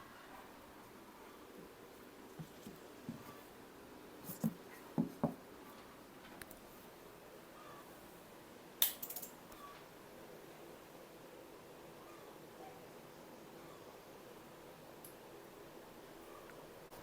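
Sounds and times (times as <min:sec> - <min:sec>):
soft handling knocks and taps: 0:02.3 - 0:03.4, 0:04.3 - 0:05.4.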